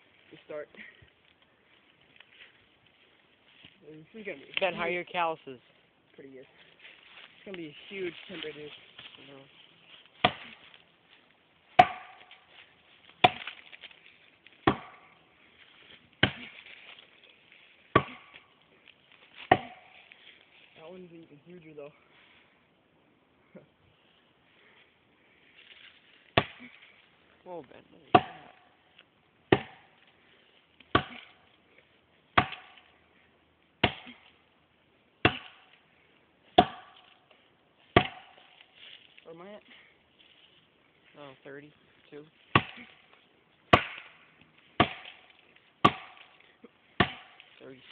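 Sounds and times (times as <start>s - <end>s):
axe chopping tree trunk: 10.2s - 10.8s, 11.7s - 13.9s, 14.5s - 15.3s, 16.2s - 16.8s, 17.9s - 18.5s, 19.3s - 20.2s, 26.3s - 26.8s, 28.1s - 28.8s, 29.5s - 30.1s, 30.8s - 31.5s, 32.3s - 33.0s, 33.8s - 34.4s, 35.2s - 35.8s, 36.5s - 38.7s, 42.4s - 43.1s, 43.7s - 47.7s.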